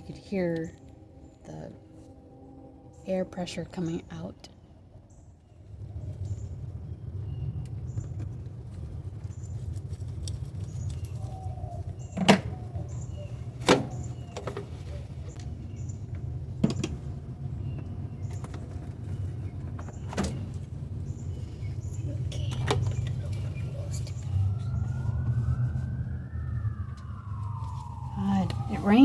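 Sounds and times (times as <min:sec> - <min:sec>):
steady low rumble: 0:00.0 - 0:29.0.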